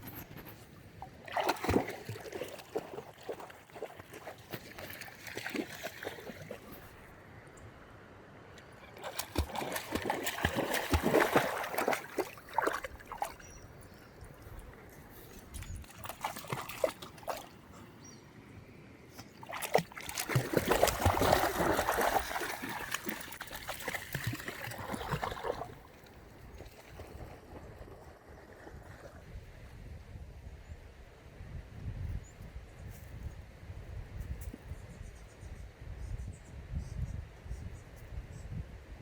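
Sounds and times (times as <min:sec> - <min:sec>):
splashing in shallow water: 0:00.0 - 0:07.1, 0:08.6 - 0:17.9, 0:19.1 - 0:29.3
river trickling: 0:01.0 - 0:18.2, 0:19.2 - 0:29.3.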